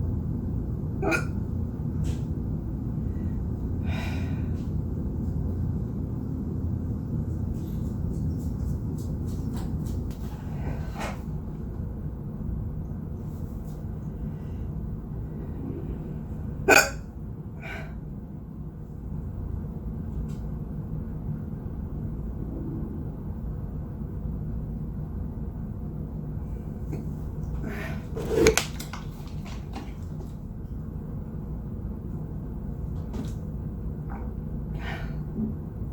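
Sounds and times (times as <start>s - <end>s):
steady low rumble: 0.0s - 28.2s, 28.8s - 35.9s
person hiccuping: 1.0s - 1.4s, 16.7s - 17.1s.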